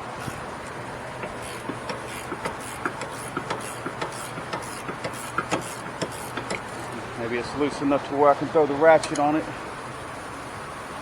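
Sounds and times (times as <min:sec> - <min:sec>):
steady background hum: 0:00.0 - 0:11.0
wrench metallic clicks: 0:01.2 - 0:07.0.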